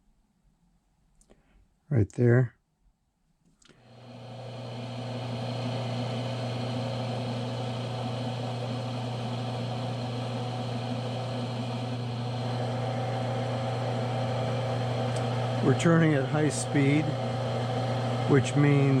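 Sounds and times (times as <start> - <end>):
lathe motor humming: 3.8 - 19.0.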